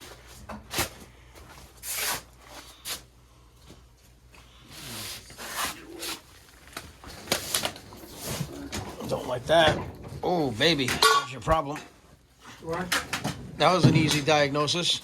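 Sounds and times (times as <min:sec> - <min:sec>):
rustling and scraping: 0:04.7 - 0:14.3.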